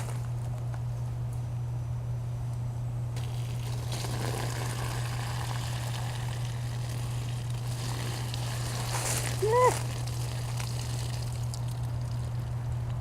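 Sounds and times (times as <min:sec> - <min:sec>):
low mechanical hum: 0:00.0 - 0:13.0
water pouring and splashing: 0:03.2 - 0:13.0.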